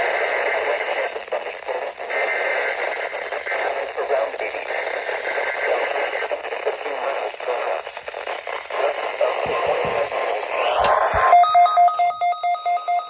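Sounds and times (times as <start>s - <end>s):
radio static hiss: 0.0s - 11.4s
rapid electronic beeps: 11.2s - 13.0s.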